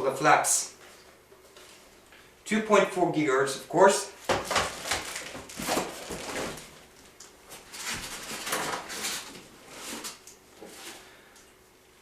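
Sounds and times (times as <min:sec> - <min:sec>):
packaging rustling: 0:04.4 - 0:11.0.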